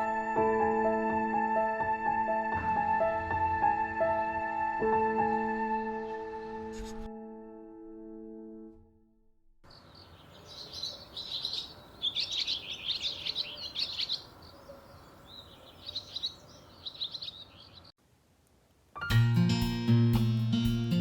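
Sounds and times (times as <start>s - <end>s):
small birds chirping: 9.6s - 18.0s.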